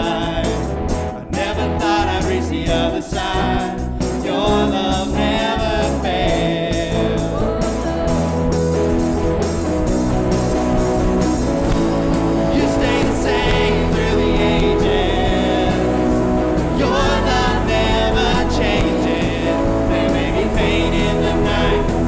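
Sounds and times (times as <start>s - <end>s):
band with bass and guitar: 0.0s - 22.0s
person singing melody: 11.7s - 22.0s.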